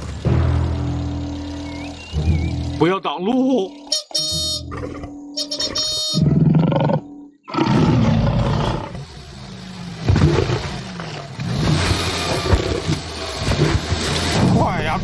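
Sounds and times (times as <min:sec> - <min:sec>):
animal roaring: 0:04.7 - 0:09.1, 0:10.0 - 0:14.6.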